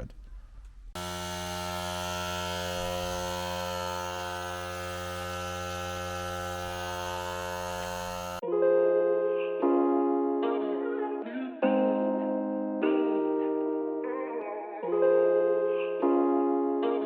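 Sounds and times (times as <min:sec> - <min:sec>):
electric motor buzzing hum: 0:01.0 - 0:08.4.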